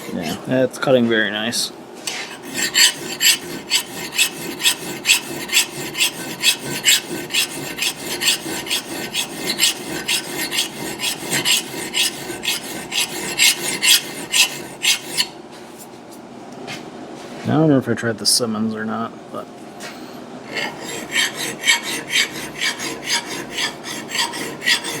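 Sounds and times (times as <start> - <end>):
file rasping on steel: 0.0 - 0.5, 2.1 - 15.4, 20.5 - 25.0.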